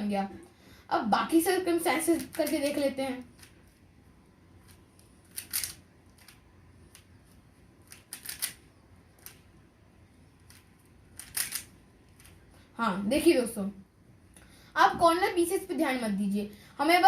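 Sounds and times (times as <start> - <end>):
plastic puzzle cube clicking: 2.2 - 2.7, 4.6 - 7.1, 7.8 - 8.6, 9.2 - 9.4, 10.4 - 12.4.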